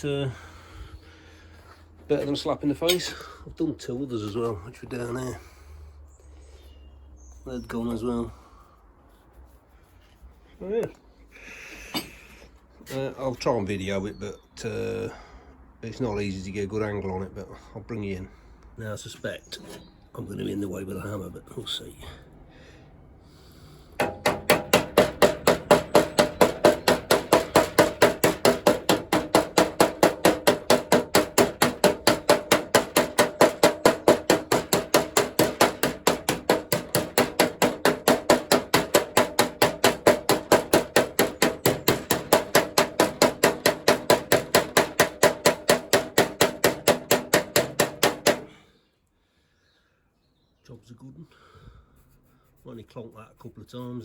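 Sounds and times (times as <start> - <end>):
hammer striking metal rivet: 2.8 - 3.2, 24.0 - 48.6.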